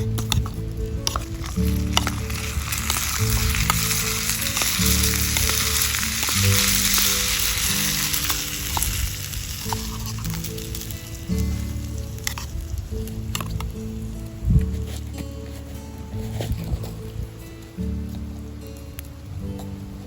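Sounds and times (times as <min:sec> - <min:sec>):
background music with bass: 0:00.0 - 0:20.0
food sizzling in a frying pan: 0:01.1 - 0:13.4.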